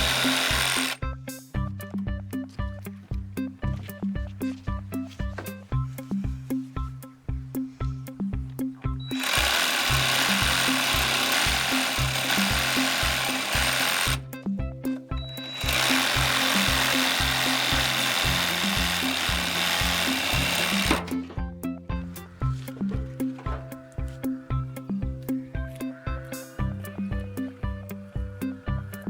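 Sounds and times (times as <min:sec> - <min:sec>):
reciprocating saw cutting wood: 0:00.0 - 0:01.0, 0:09.0 - 0:14.2, 0:15.2 - 0:21.3
background music with steady beat: 0:00.0 - 0:29.0.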